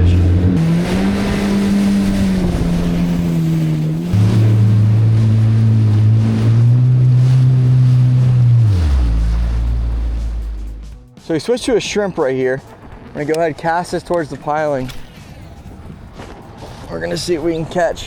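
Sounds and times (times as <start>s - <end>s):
jet ski engine running: 0.0s - 17.8s
water and wind hiss: 0.6s - 10.9s.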